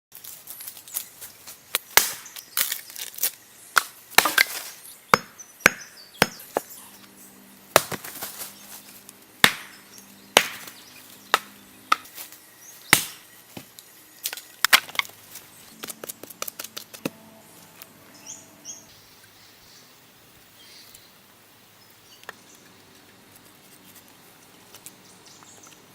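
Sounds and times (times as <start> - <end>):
stone tool chopping knocks: 5.1 - 6.7, 7.8 - 8.1, 9.4 - 9.8, 10.4 - 12.1, 12.9 - 13.7.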